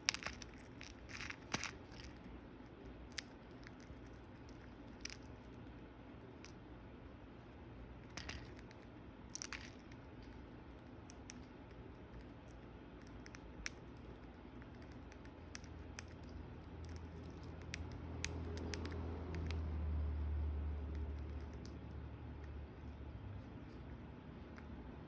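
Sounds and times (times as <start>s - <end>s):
bird pecking at food: 0.0s - 6.6s, 7.9s - 19.6s, 20.8s - 22.8s.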